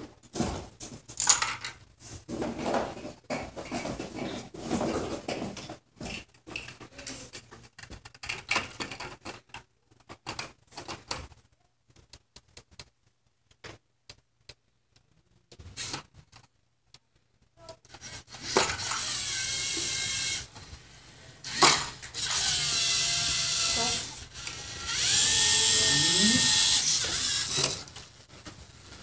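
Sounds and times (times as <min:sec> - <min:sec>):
plastic parts clicking and clacking: 0:00.8 - 0:01.8, 0:02.4 - 0:11.4, 0:17.7 - 0:20.7, 0:21.4 - 0:25.8, 0:26.4 - 0:28.6.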